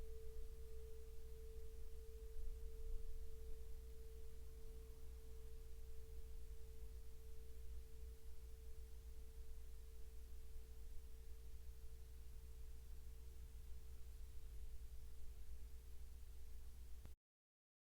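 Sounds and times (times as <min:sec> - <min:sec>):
singing bowl ringing: 0:00.0 - 0:12.1.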